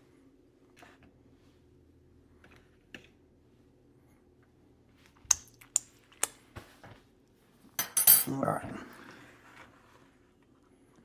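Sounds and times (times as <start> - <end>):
kitchenware clicking and tapping: 7.8 - 8.4.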